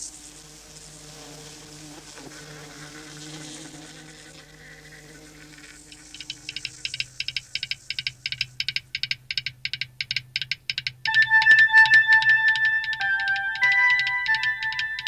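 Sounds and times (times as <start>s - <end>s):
fast mechanical ticking: 4.6s - 11.1s
music: 10.4s - 15.0s
steady high tone: 11.1s - 15.0s.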